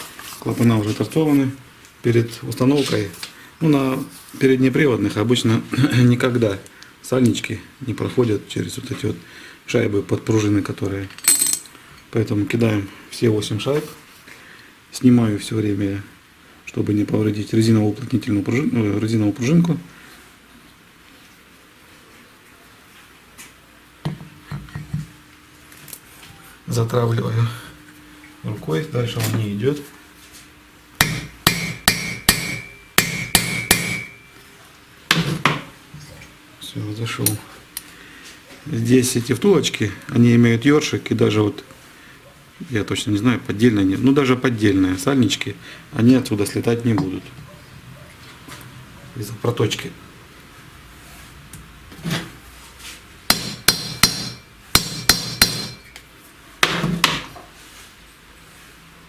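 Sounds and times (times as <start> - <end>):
hammer tapping metal: 31.0 - 34.3, 53.3 - 56.0.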